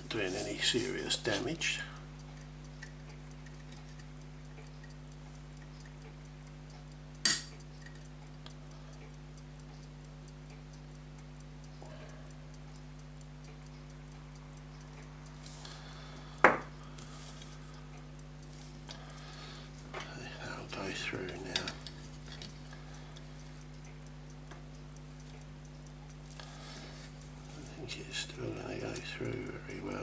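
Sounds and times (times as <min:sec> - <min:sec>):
steady low hum: 0:00.0 - 0:30.0
sharp metallic tool clicks: 0:07.2 - 0:07.6.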